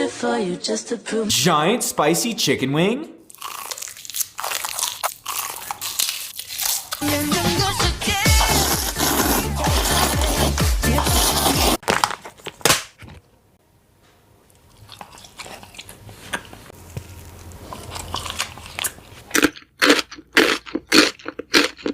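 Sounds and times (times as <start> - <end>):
chewing and biting chicken: 3.3 - 7.0, 14.6 - 21.9
loud rapid crunches: 3.3 - 7.0, 17.7 - 21.9
background music: 7.0 - 11.8.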